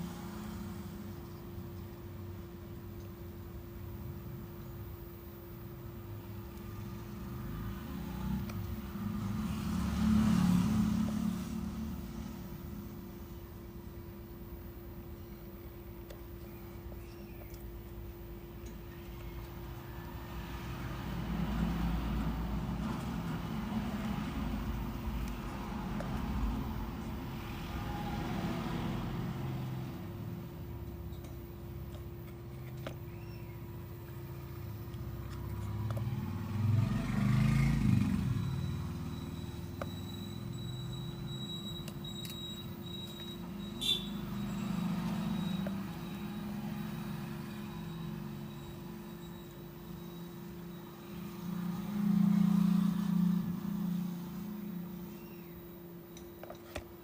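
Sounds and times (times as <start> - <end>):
road traffic rumble: 0.0 - 57.0
steady low hum: 0.0 - 57.0
vehicle passing: 6.8 - 12.9, 19.6 - 30.9, 34.4 - 40.7, 43.4 - 49.2, 50.4 - 55.2.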